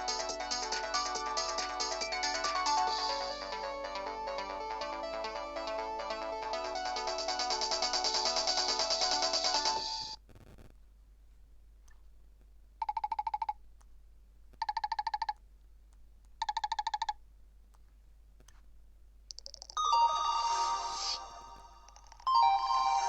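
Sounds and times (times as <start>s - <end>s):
ringtone melody: 0.0s - 10.2s, 19.7s - 23.0s
trilling phone ringtone: 12.8s - 13.5s, 19.8s - 23.0s.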